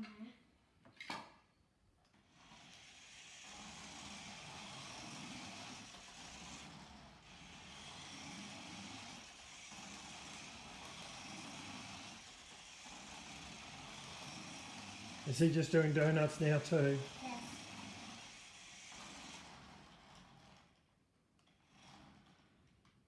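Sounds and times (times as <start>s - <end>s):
toy electric motor whirring: 2.1s - 23.0s.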